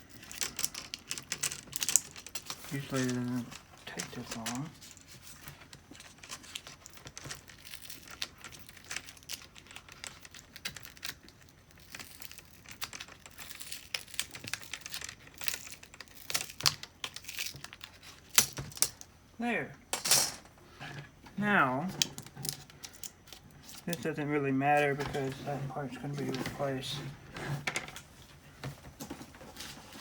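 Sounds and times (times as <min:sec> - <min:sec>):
adhesive tape crinkling and tearing: 0:00.2 - 0:19.0.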